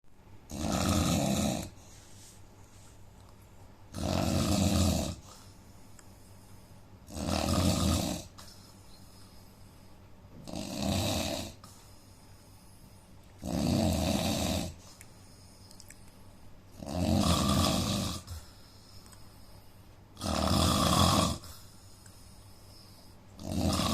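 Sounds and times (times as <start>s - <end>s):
man snoring: 0.5s - 1.8s, 3.9s - 5.3s, 7.1s - 8.4s, 10.4s - 11.7s, 13.4s - 14.8s, 16.8s - 18.4s, 20.2s - 21.5s, 23.4s - 23.9s.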